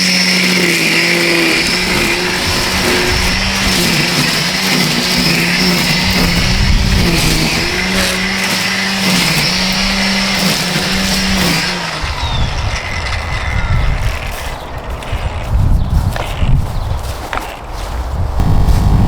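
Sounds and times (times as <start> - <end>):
string trimmer motor running: 0.0 - 16.6, 18.4 - 19.0
low rumbling noise: 18.1 - 19.0.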